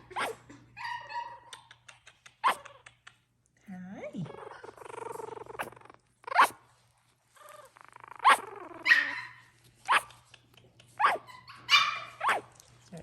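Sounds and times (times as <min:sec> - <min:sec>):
small dog yipping: 0:00.1 - 0:01.7, 0:02.4 - 0:03.0, 0:04.8 - 0:06.6, 0:07.6 - 0:10.2, 0:11.0 - 0:12.5.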